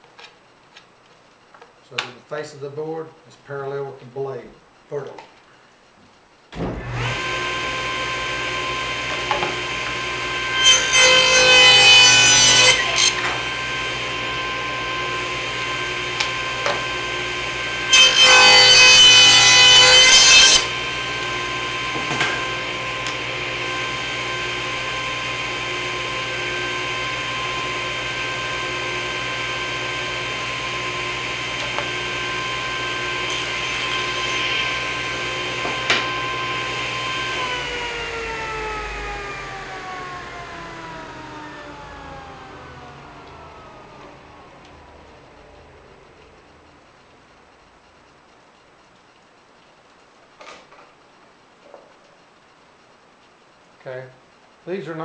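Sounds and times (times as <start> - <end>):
table saw running: 6.6 - 46.7
saw blade cutting wood: 9.0 - 14.2, 15.9 - 21.3, 30.3 - 37.8.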